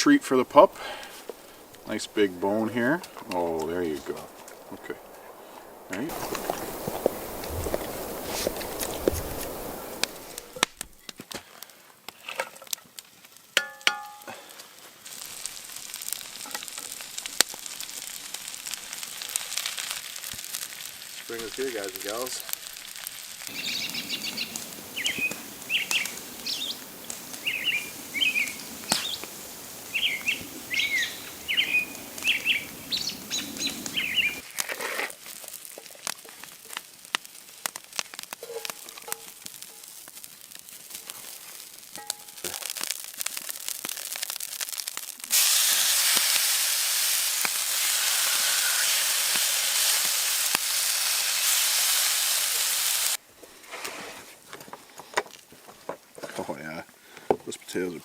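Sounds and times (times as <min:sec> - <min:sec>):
birds chirping: 0:00.0 - 0:10.5, 0:23.5 - 0:34.4
food sizzling: 0:00.0 - 0:11.2, 0:12.2 - 0:53.2
faint crackling: 0:00.0 - 0:12.2, 0:14.2 - 0:46.5.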